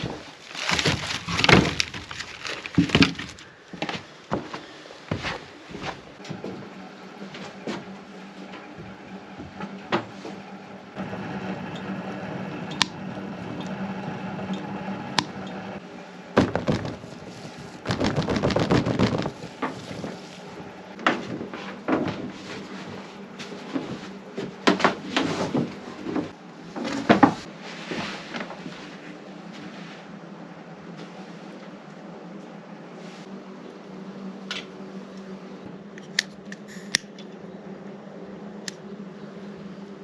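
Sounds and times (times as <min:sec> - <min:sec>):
knocks and thuds: 0:16.4 - 0:20.2.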